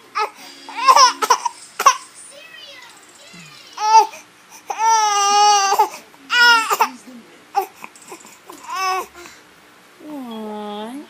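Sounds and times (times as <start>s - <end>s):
baby crying: 0.1s - 2.0s, 3.3s - 6.9s, 8.5s - 9.1s.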